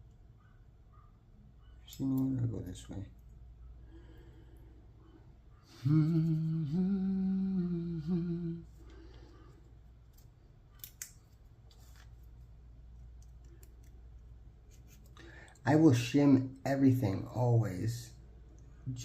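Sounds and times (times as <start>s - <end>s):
man humming: 5.7s - 8.9s.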